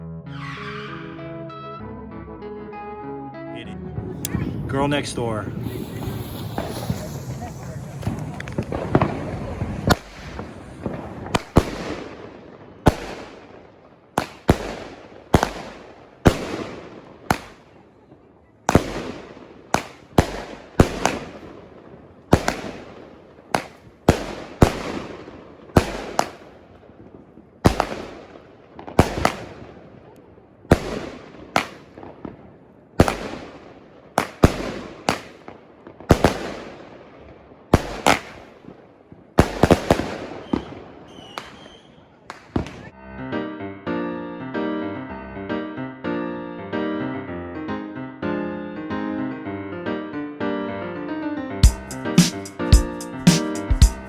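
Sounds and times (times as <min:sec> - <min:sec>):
firework bangs with echo: 0:05.0 - 0:17.8, 0:18.7 - 0:30.1, 0:30.7 - 0:43.0.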